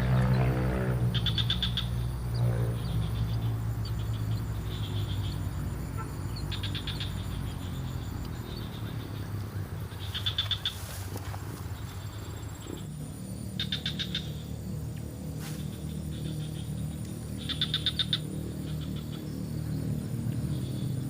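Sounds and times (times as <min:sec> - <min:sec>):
low droning sound: 0:00.0 - 0:10.5
steady low hum: 0:00.0 - 0:21.0
high-pitched pulsed animal chirps: 0:17.4 - 0:19.3.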